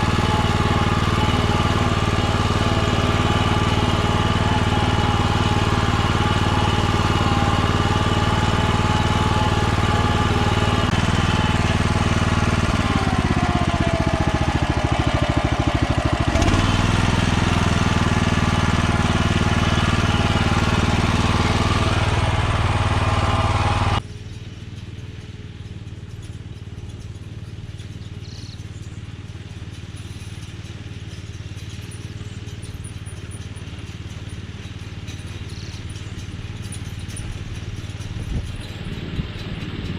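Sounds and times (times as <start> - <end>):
small engine running: 0.0 - 39.9.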